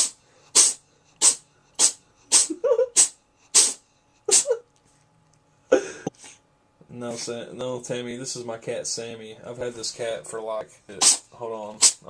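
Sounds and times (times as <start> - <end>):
cat sneezing: 0.0 - 4.6, 11.0 - 12.0.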